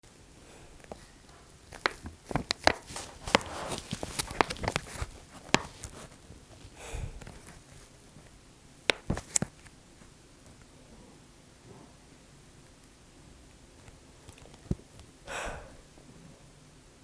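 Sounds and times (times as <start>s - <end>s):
soft rustle: 0.4s - 12.0s.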